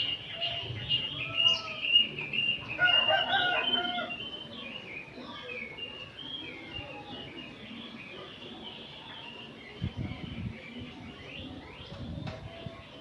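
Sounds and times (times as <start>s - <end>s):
magpie-robins singing chorus: 0.0s - 13.0s.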